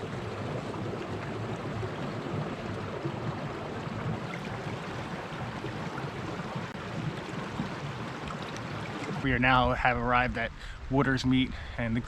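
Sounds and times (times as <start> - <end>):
mountain stream rushing: 0.0 - 10.2
faint ticks: 7.6 - 9.2.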